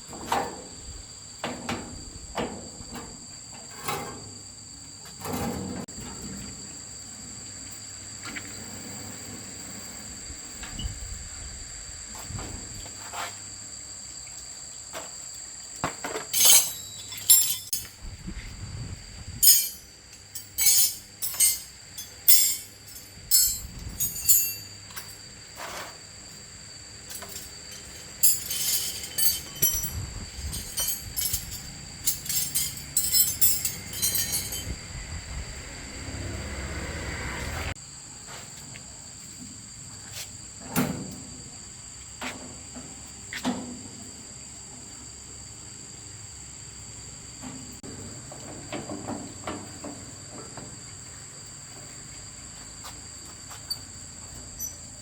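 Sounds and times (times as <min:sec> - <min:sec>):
metallic clinks and knocks: 0:16.3 - 0:17.9, 0:19.4 - 0:25.2, 0:27.1 - 0:34.8, 0:54.5 - 0:54.9.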